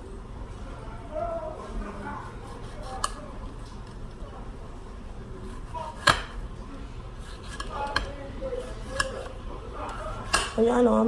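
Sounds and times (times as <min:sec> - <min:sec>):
knife slicing tomatoes: 0:01.9 - 0:03.2, 0:05.4 - 0:06.4, 0:07.2 - 0:10.6.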